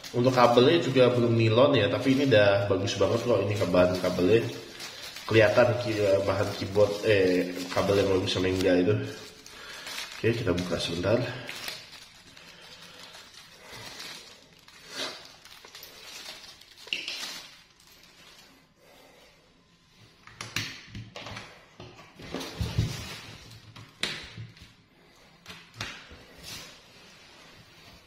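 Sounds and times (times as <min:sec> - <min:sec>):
packaging rustling: 0:00.0 - 0:18.6, 0:22.2 - 0:23.8.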